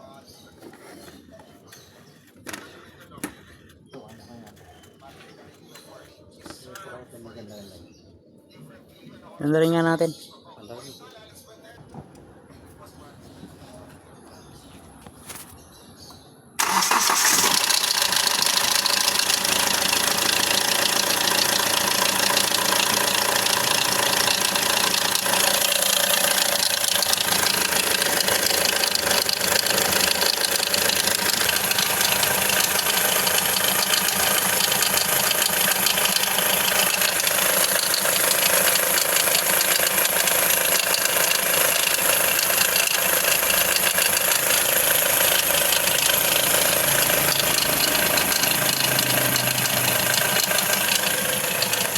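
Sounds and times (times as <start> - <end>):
diesel engine knocking: 16.6 - 51.9.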